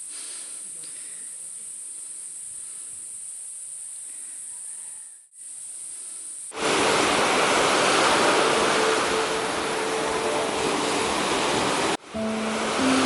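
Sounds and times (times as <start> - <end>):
faint high-pitched hiss: 0.0 - 6.6
rushing water: 6.5 - 13.0.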